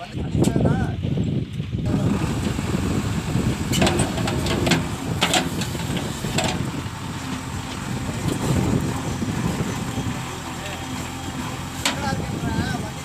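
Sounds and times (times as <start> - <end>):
diesel engine running: 1.7 - 13.0
sharp knocks and clatters: 3.8 - 6.7.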